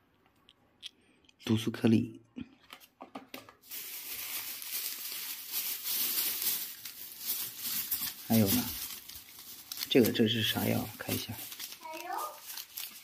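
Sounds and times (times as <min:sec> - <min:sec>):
plastic packaging crinkling: 0:03.6 - 0:13.0.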